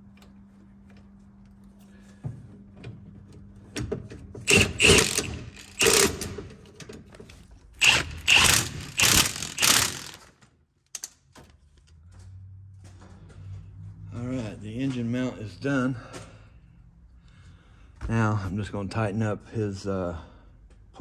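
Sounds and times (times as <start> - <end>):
ratchet wrench clicking: 4.5 - 6.5, 7.8 - 10.3.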